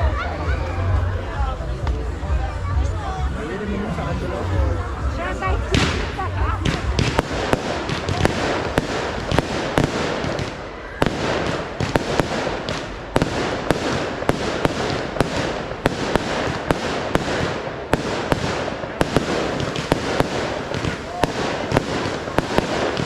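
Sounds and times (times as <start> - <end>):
fireworks bangs: 5.0 - 23.0
crackling of bursting shells: 7.0 - 23.0.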